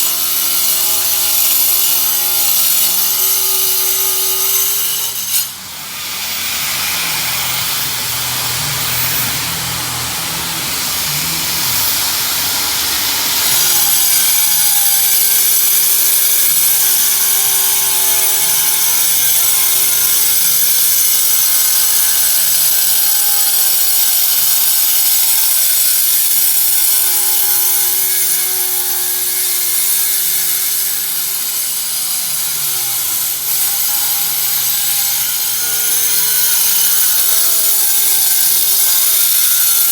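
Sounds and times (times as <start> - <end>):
power tool grinding: 0.0 - 39.9.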